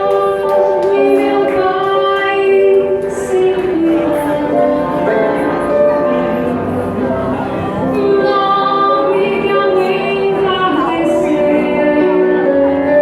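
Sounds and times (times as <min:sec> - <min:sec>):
singers holding long notes: 0:00.0 - 0:13.0
woman singing: 0:00.0 - 0:13.0.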